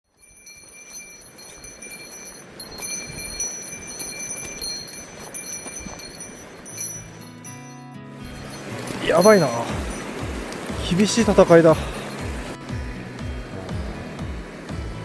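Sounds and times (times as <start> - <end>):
small bell jingling: 0.0 - 12.6
steady rushing background: 8.3 - 15.0.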